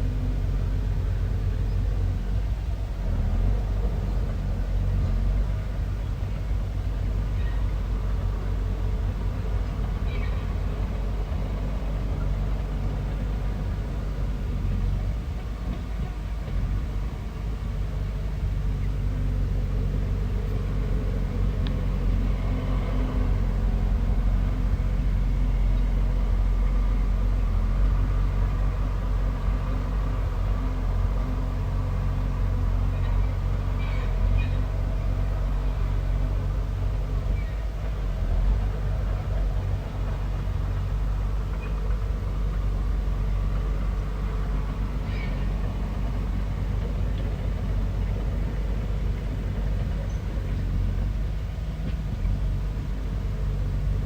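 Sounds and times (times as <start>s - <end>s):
bulldozer diesel engine rumbling: 0.0s - 54.0s.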